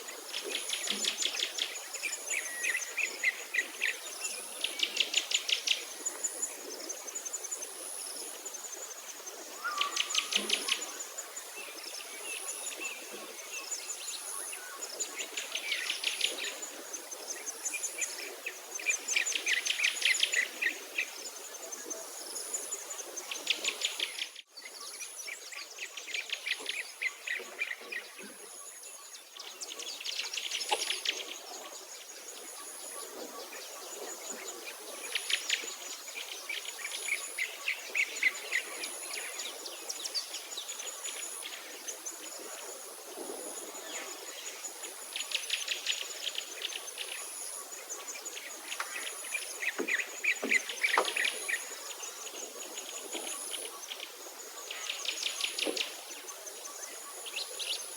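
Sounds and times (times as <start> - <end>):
songbirds trilling: 47.6 - 53.8.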